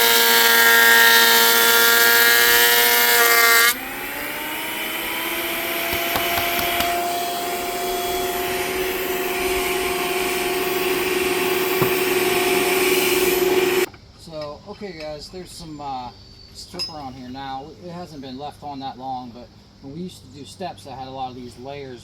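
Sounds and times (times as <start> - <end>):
electric planer running: 0.0 - 13.9.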